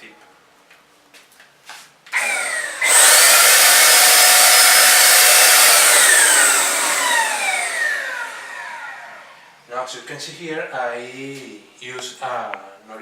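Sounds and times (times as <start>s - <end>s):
turbine whine winding down: 2.2s - 9.6s.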